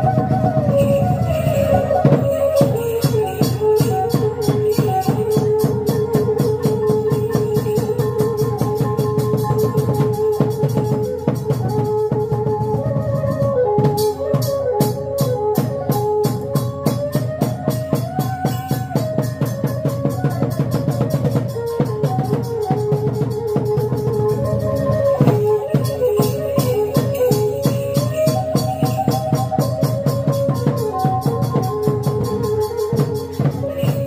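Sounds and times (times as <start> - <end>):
wavering sliding melody: 0.0 - 10.5, 23.4 - 34.0.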